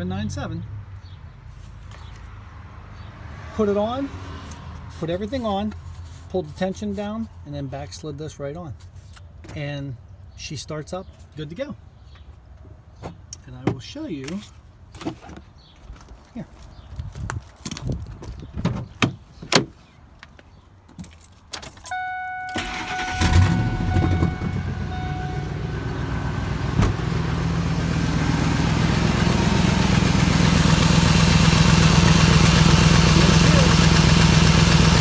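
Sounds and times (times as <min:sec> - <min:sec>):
engine idling: 0:21.9 - 0:35.0
truck engine cranking and starting: 0:21.9 - 0:35.0.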